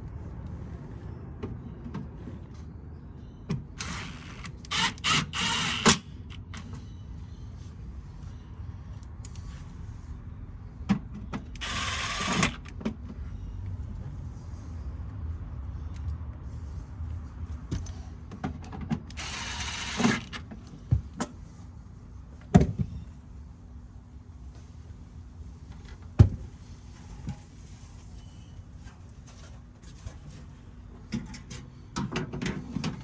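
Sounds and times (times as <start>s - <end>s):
cordless drill whirring: 3.8s - 6.6s, 11.6s - 12.7s, 19.2s - 20.4s.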